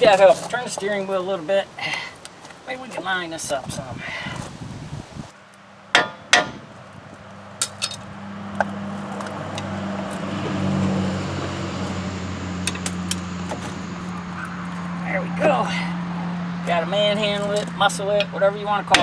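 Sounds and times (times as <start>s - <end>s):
metal knocks and clinks: 7.6s - 8.1s, 12.6s - 14.9s.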